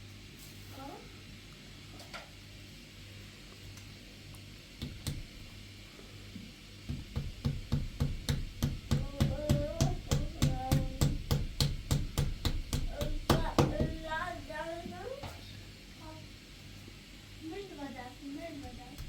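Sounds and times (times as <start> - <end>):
knocks: 6.9 - 14.1
music with a drum beat: 6.9 - 14.2.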